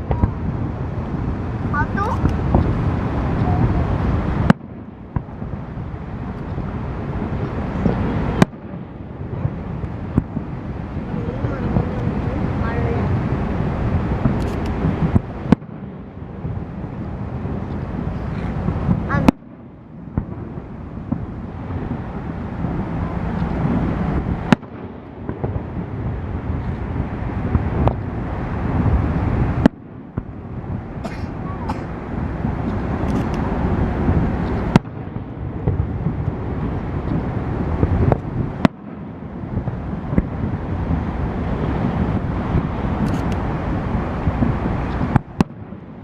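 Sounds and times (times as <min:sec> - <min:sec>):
small firework pops: 0:00.0 - 0:00.4, 0:02.0 - 0:02.8, 0:04.4 - 0:05.4, 0:07.8 - 0:08.7, 0:14.2 - 0:15.7, 0:24.5 - 0:25.7, 0:29.6 - 0:30.3, 0:37.0 - 0:38.9, 0:39.6 - 0:40.3, 0:42.6 - 0:43.5, 0:44.4 - 0:45.6
fireworks bursting with bangs: 0:00.0 - 0:46.0
low rumble: 0:00.0 - 0:46.0
steady low noise: 0:00.0 - 0:46.0
wind on microphone: 0:00.0 - 0:46.0.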